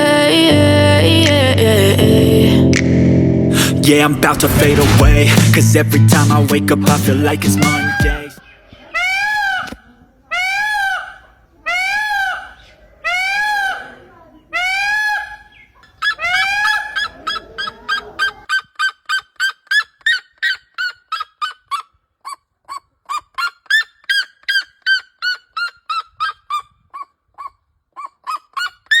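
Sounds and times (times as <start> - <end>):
peacock calling: 7.5 - 29.0.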